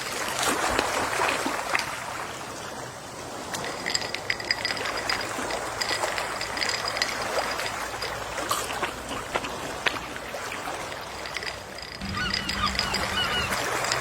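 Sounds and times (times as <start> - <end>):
gentle waves lapping on shore: 0.0 - 14.0
small crackles and ticks: 10.8 - 14.0.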